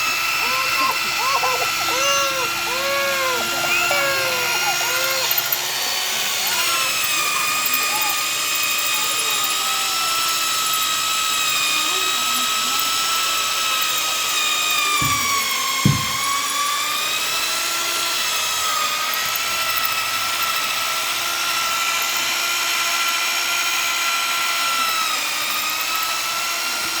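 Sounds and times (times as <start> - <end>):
electric drill boring into iron: 0.0 - 27.0
short knocks: 15.0 - 16.5.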